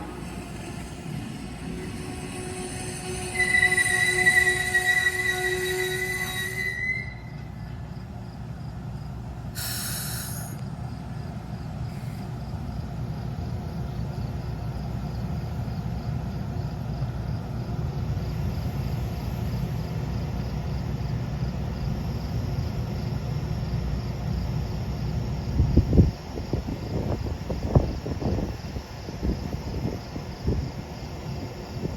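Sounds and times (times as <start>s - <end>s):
train brakes squealing: 0.0s - 8.1s, 9.6s - 10.6s
diesel locomotive rumbling: 0.0s - 31.9s
air hiss: 9.5s - 10.6s.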